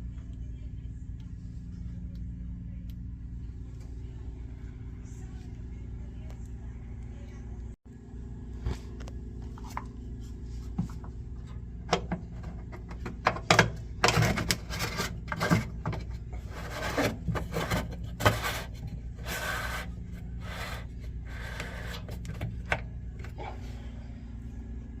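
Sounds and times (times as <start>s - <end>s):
washing machine humming: 0.0s - 25.0s
scraping and clicking noises: 8.9s - 23.6s.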